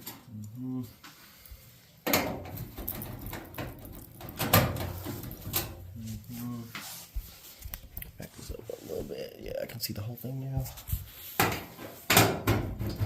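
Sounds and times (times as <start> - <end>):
handling knocks and scrapes: 2.4 - 9.3.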